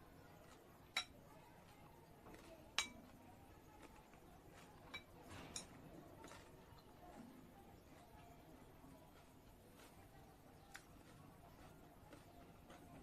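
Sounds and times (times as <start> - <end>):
cutlery clinking against a dish: 0.5 - 1.2, 2.3 - 3.2, 4.6 - 6.5.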